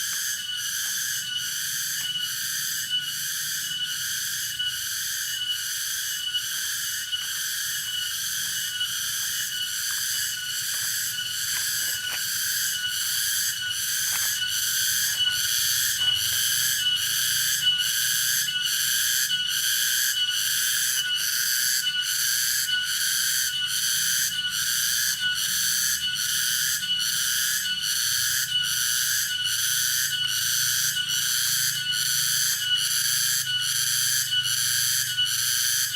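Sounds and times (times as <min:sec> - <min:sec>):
cicada buzzing: 0:00.0 - 0:35.9.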